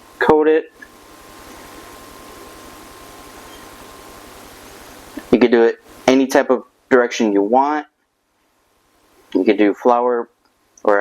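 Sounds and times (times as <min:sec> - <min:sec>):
faint high steady tone: 0:00.0 - 0:07.9
steady background hiss: 0:00.0 - 0:11.0.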